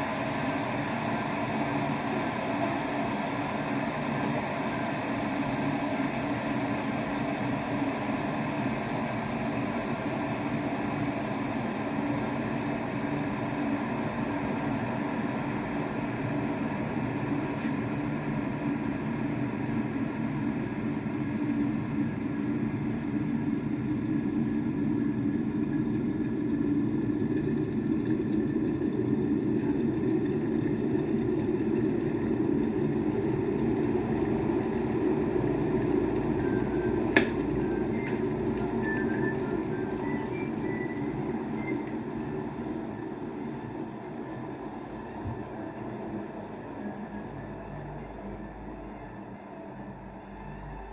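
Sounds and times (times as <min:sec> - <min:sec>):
electric kettle heating water: 0:00.0 - 0:50.9.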